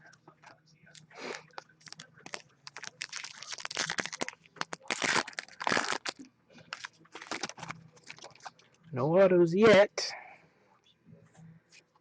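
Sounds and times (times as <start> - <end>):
foil wrappers crinkling: 1.3 - 8.7.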